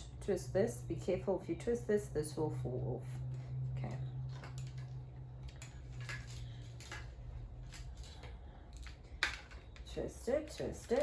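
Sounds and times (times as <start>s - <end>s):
plastic parts clicking and rustling: 4.3s - 11.0s.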